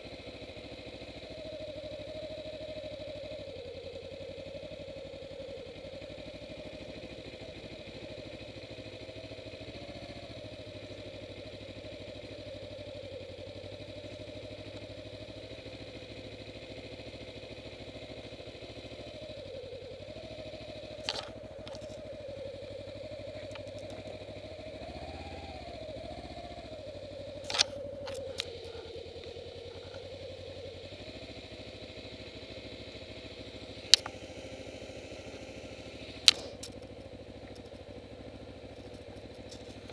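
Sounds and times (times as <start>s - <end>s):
motorcycle engine running: 0.0s - 39.9s
sharp clicks: 27.4s - 30.0s, 33.8s - 34.2s, 36.2s - 36.9s.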